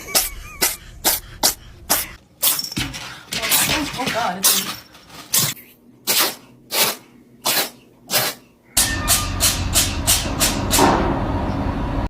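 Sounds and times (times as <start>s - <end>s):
cat sneezing: 6.0s - 8.5s.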